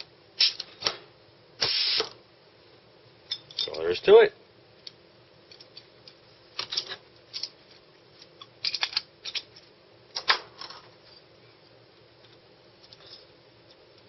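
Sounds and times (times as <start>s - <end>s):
metal parts and tools clattering: 3.3s - 3.8s, 6.6s - 7.6s, 8.3s - 11.2s.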